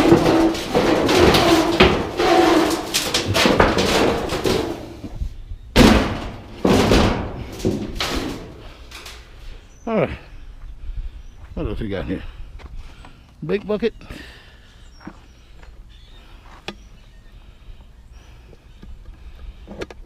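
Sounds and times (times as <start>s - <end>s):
loud metal bangs: 0.0s - 9.3s
scrap metal clanking: 0.0s - 9.4s.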